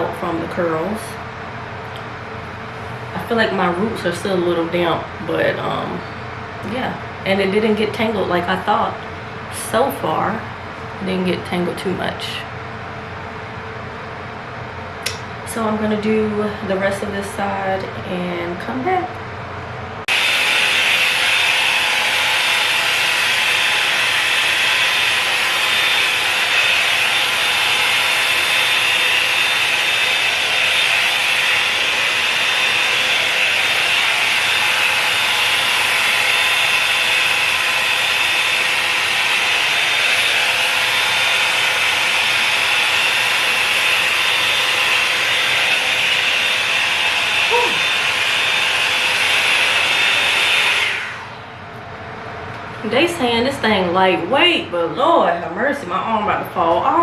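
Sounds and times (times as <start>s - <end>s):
hot-air brush dryer whirring: 0.0s - 11.2s, 20.0s - 51.6s.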